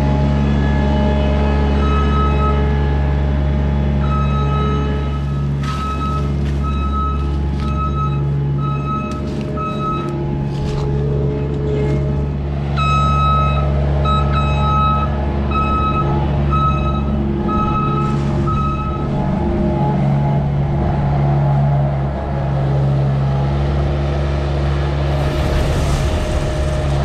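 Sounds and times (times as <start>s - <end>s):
engine running: 0.0s - 27.0s
backup alarm beeping: 4.0s - 10.3s, 12.7s - 19.2s.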